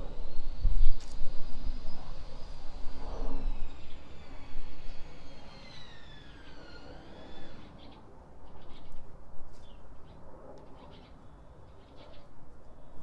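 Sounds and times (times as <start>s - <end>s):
distant siren wailing: 0.0s - 7.8s.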